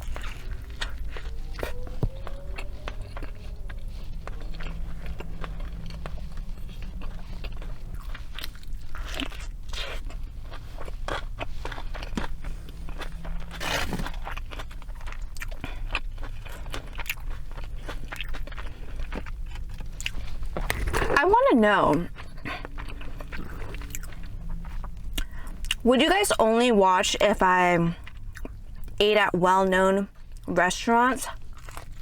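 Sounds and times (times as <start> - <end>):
chewing and crunching fried food: 0.0 - 32.0
steady low hum: 0.0 - 32.0.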